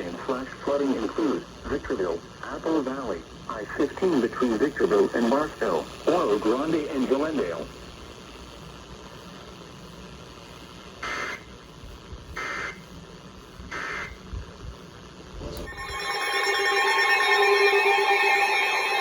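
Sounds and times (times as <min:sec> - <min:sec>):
raspy digital data tones: 0:15.6 - 0:19.0
warbling electronic alert alarm: 0:15.6 - 0:19.0.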